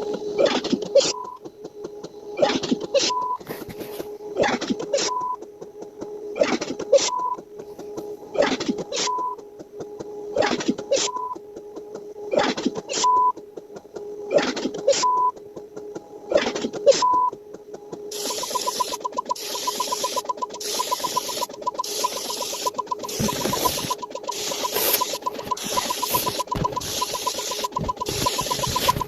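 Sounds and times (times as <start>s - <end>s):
mechanical clicks clattering: 15.8s - 29.0s
short beeps: 18.2s - 29.0s.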